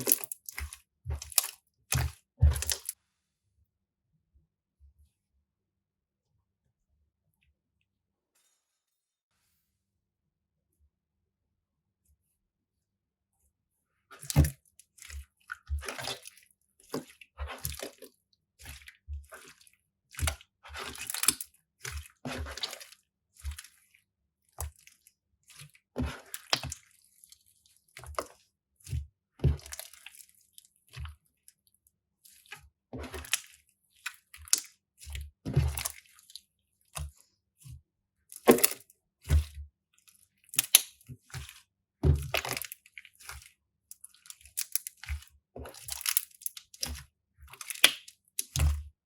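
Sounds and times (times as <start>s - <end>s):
crunchy slime squished by hand: 0.0s - 3.0s.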